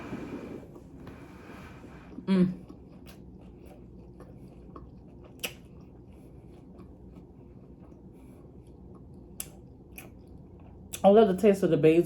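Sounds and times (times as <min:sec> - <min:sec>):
person chewing food: 0:02.0 - 0:11.1
wet mouth clicks: 0:05.3 - 0:05.7, 0:09.3 - 0:10.2.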